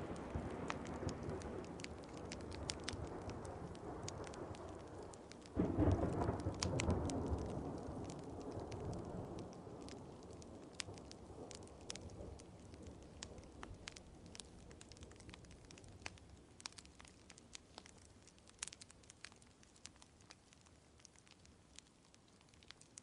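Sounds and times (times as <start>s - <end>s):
thunder rumble: 0.0s - 16.7s
wood fire crackling and popping: 0.0s - 23.0s.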